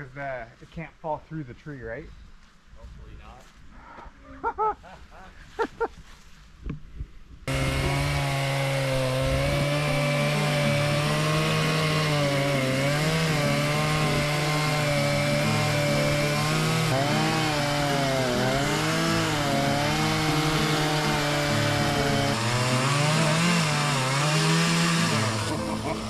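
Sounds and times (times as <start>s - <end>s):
chainsaw cutting tree trunk: 7.5s - 26.0s.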